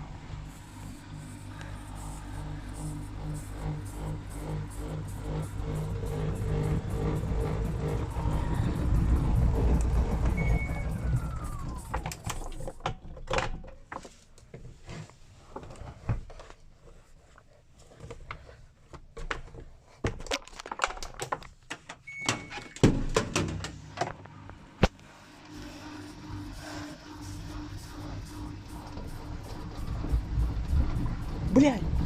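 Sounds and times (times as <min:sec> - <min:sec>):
music: 0:04.1 - 0:11.9
car interior rumble: 0:05.0 - 0:12.2.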